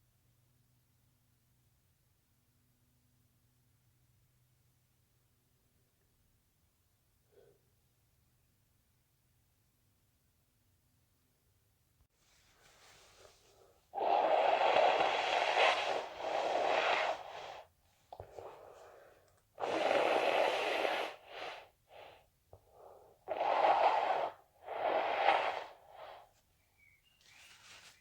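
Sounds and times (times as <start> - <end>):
person blowing nose: 12.6 - 26.4.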